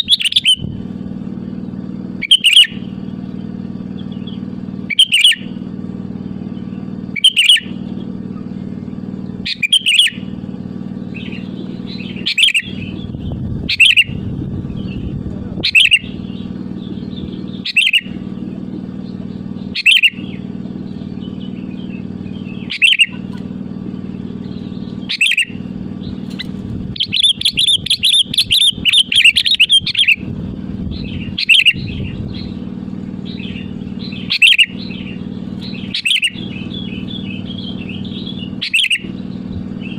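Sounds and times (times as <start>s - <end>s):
bird chattering rapidly: 0.0s - 0.7s, 2.2s - 2.9s, 4.9s - 5.5s, 7.2s - 7.8s, 9.4s - 10.2s, 11.1s - 18.2s, 19.6s - 20.4s, 21.5s - 23.4s, 25.0s - 32.6s, 33.2s - 39.9s
bulbul calling: 0.0s - 39.9s
steady low hum: 0.0s - 39.9s.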